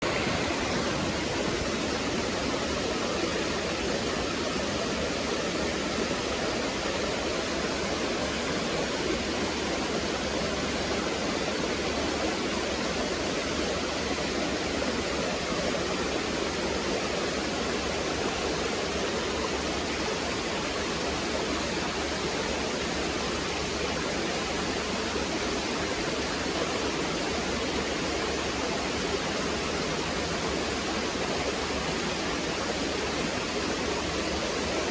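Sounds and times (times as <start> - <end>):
water falling and gurgling: 0.0 - 34.9.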